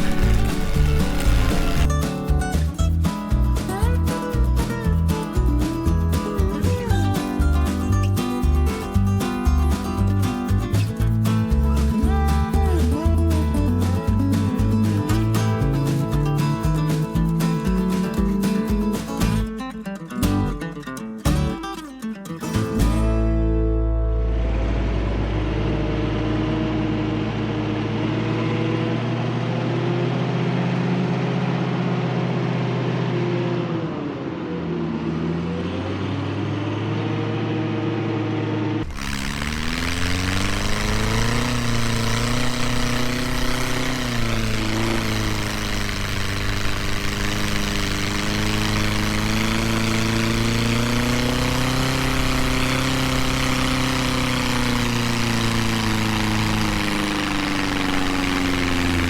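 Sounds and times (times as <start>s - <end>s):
snow vehicle engine running: 0.0s - 19.5s, 22.8s - 59.0s
hiss: 38.9s - 59.0s.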